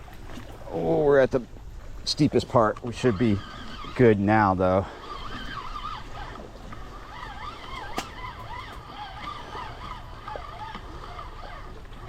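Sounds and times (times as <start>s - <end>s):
low rumble of wind or river: 0.0s - 12.0s
birds chirping and warbling: 2.8s - 11.9s.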